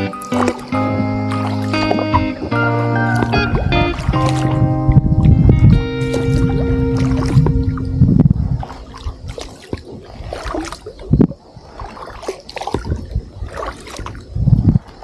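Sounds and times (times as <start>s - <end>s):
paddle strokes splashing water: 0.0s - 5.4s, 6.0s - 15.0s
background music: 0.0s - 8.0s
paddle knocks: 0.2s - 4.6s.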